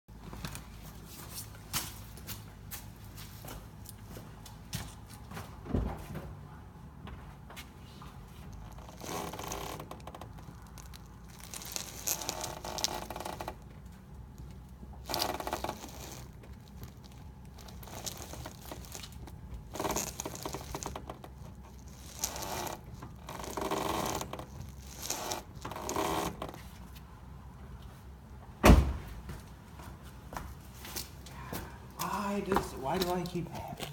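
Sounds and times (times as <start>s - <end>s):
steering creaking: 8.3s - 27.5s.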